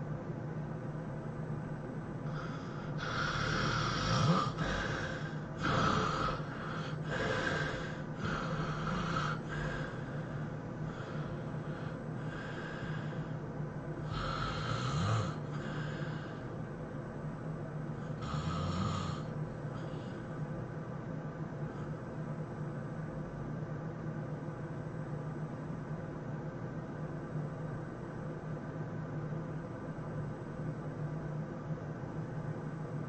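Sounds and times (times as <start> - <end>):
person snoring: 2.3 - 13.3, 14.0 - 16.4, 18.0 - 20.3.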